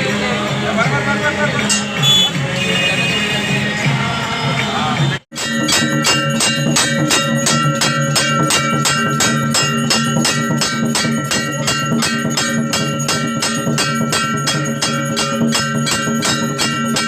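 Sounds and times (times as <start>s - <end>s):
percussion beat: 0.0s - 17.0s
bell-like ringing: 1.6s - 3.6s, 5.3s - 17.0s.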